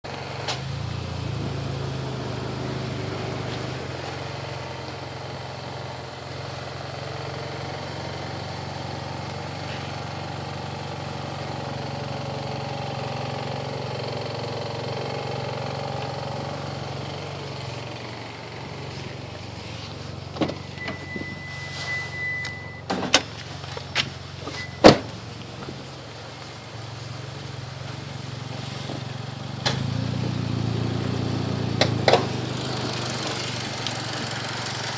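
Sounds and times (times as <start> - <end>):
car engine idling: 0.0 - 34.9
brief high steady tone: 20.5 - 22.9
sharp clicks and knocks: 31.8 - 32.4.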